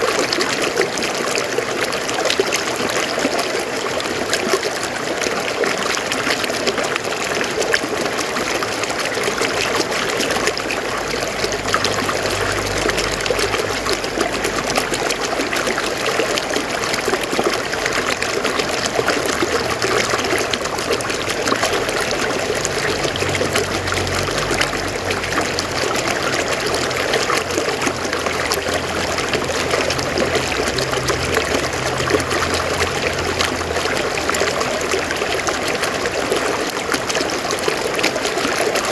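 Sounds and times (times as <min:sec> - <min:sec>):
river water rushing over rocks: 0:00.0 - 0:38.9.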